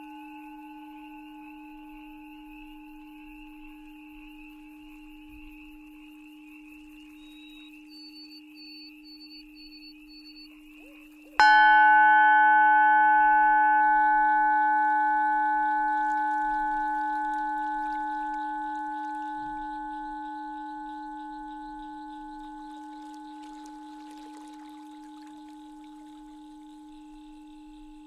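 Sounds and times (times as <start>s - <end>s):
singing bowl ringing: 0.0s - 28.0s
low drone: 11.4s - 24.1s.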